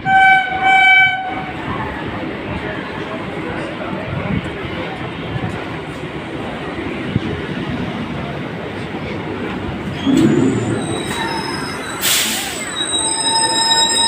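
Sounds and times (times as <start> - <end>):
train rumbling on rails: 0.0 - 14.0
high wheel squeal: 9.9 - 14.0.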